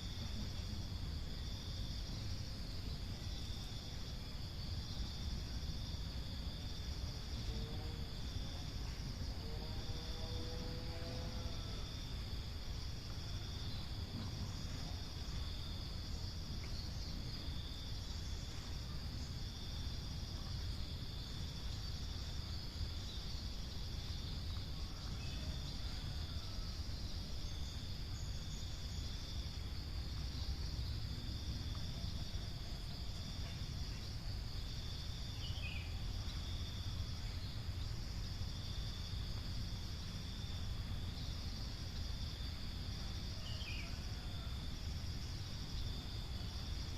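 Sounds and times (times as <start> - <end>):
insects buzzing chorus: 0.0 - 46.9.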